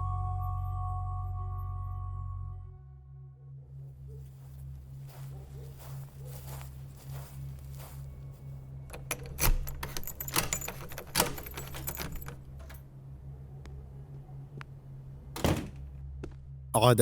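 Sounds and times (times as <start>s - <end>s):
steady low drone: 0.0s - 9.2s
keys jangling in door lock: 8.9s - 12.8s.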